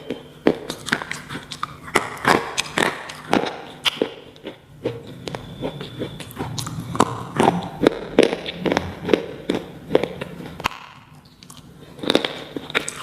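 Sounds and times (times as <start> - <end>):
pencil being chewed crunching: 0.5 - 13.0.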